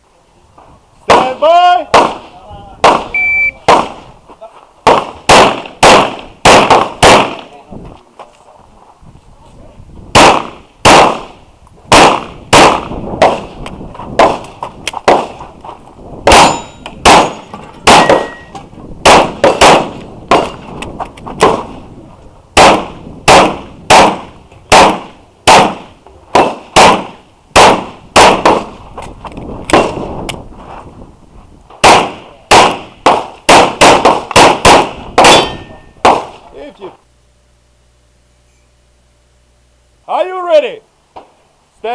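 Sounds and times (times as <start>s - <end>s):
pistol shots: 1.1s - 4.0s, 4.8s - 7.5s, 10.1s - 13.5s, 14.2s - 15.4s, 16.2s - 18.3s, 19.0s - 20.6s, 22.6s - 28.8s, 31.8s - 36.4s
short metallic ringing: 16.4s - 18.6s, 35.3s - 36.0s.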